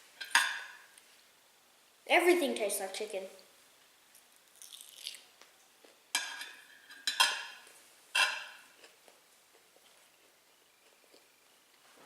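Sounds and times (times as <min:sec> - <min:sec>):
cutlery clinking on a plate: 0:06.2 - 0:07.6, 0:08.2 - 0:08.6
cutlery scraping a plate: 0:06.2 - 0:07.6, 0:08.2 - 0:08.8.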